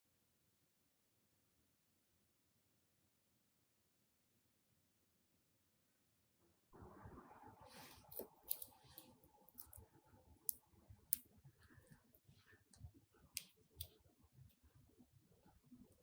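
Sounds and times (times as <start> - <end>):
slime clicks and crackles: 8.0 - 9.8.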